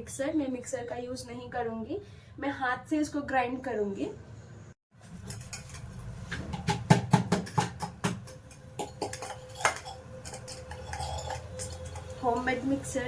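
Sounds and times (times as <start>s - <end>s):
pestle pounding in a mortar: 6.4s - 9.8s.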